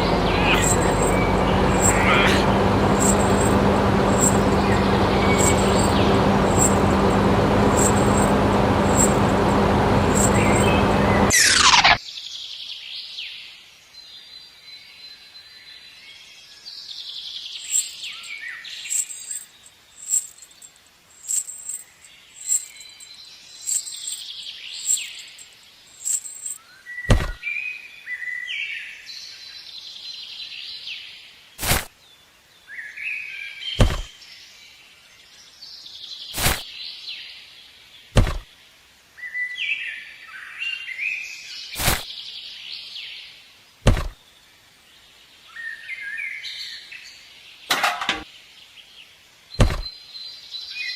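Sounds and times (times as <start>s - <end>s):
birds chirping: 0.0s - 12.0s, 17.2s - 27.4s, 49.5s - 50.6s
sharp knocks: 27.1s - 27.4s, 33.8s - 34.1s, 38.2s - 38.5s, 43.8s - 44.2s, 49.6s - 49.9s.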